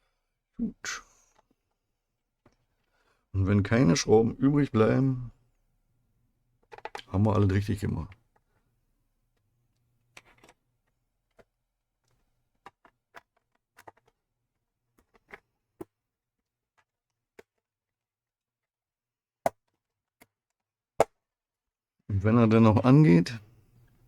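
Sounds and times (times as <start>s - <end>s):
sharp plastic clacks: 6.6s - 7.2s, 10.1s - 14.2s.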